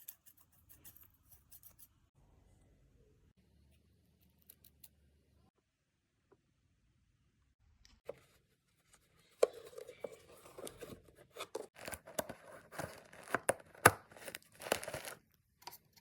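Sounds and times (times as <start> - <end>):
plastic wrapping crinkling and tearing: 11.7 - 15.2.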